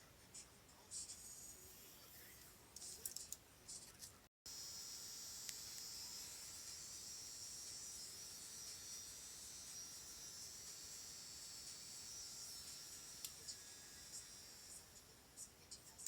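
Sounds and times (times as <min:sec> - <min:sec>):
high-pitched hiss with buzz: 0:04.5 - 0:16.0.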